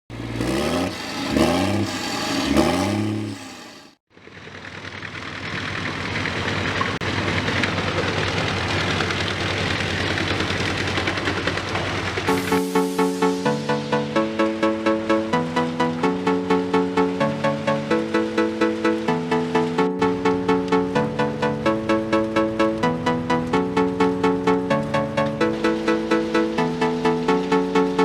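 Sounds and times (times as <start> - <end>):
wood chipper running: 0.1 - 28.0
rising and falling pitched sweeps: 0.4 - 4.0, 12.3 - 28.0
music: 12.3 - 28.0.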